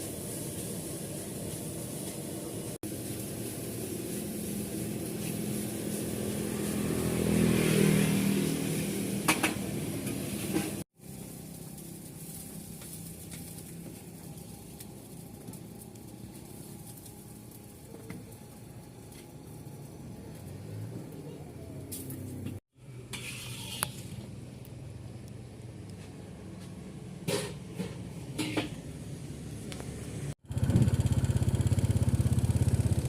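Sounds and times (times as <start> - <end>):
traffic noise: 0.0 - 33.0
vehicle engine passing: 5.4 - 10.8, 19.4 - 22.6.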